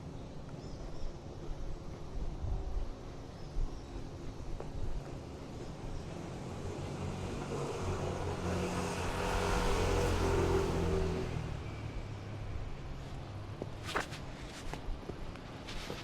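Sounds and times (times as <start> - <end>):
car passing by: 6.2 - 12.5.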